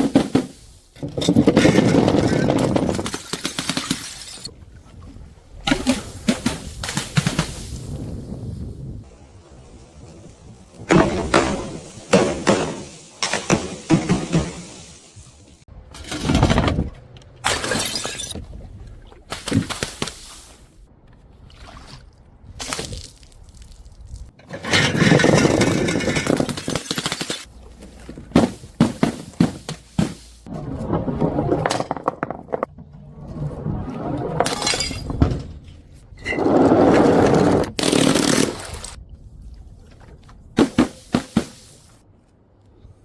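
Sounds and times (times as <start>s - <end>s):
glass bottles smashing: 17.5s - 18.4s, 34.5s - 35.2s
broken glass clattering: 34.5s - 35.2s.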